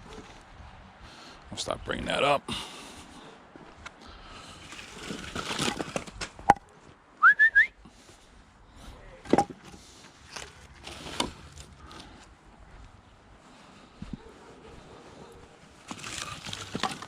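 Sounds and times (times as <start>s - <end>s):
firewood scraping and rustling: 0.0s - 1.3s, 2.6s - 7.0s, 7.9s - 17.0s
rising whistled notes: 7.2s - 7.8s.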